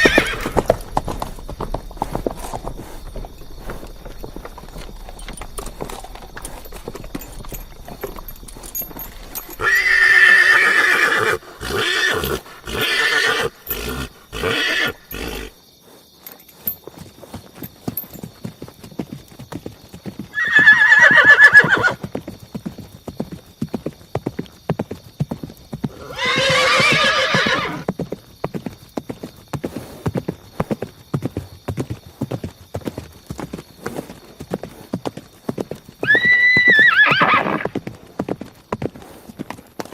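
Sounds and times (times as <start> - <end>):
horse whinnying: 0.0 - 0.9, 4.1 - 15.6, 20.3 - 22.0, 25.9 - 27.9, 36.0 - 37.8
hooves clip-clopping: 0.0 - 39.9.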